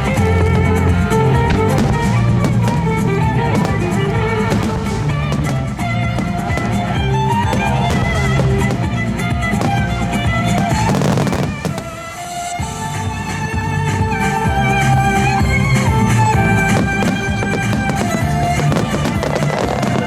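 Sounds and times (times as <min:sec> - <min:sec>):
drums: 0:00.0 - 0:20.0
violin: 0:00.0 - 0:20.0.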